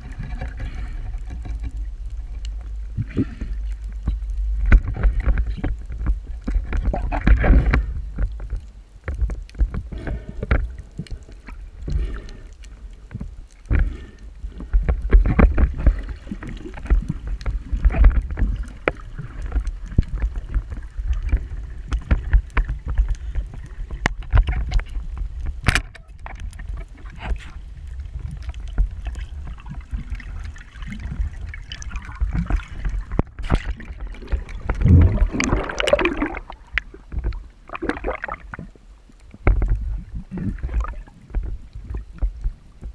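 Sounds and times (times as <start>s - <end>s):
water sloshing and gurgling: 0.0s - 42.9s
low rumble: 14.3s - 42.9s.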